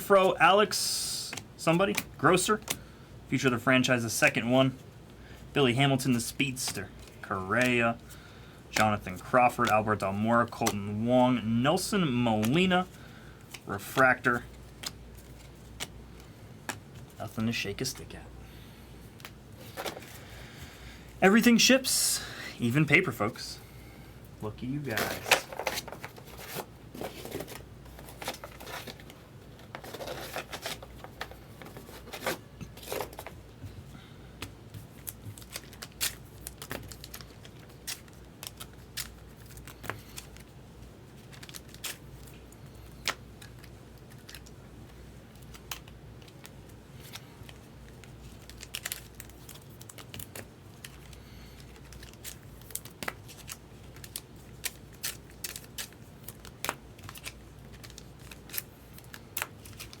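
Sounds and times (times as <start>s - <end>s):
cards clicking and snapping: 6.5s - 7.8s, 14.7s - 17.1s, 34.4s - 40.5s, 45.3s - 60.0s
foil wrapper crinkling and tearing: 35.0s - 40.5s, 41.2s - 44.5s, 45.3s - 60.0s.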